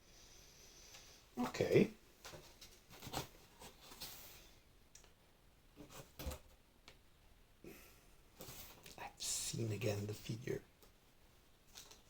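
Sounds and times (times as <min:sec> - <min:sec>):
paper packaging rustling: 0:02.3 - 0:04.5.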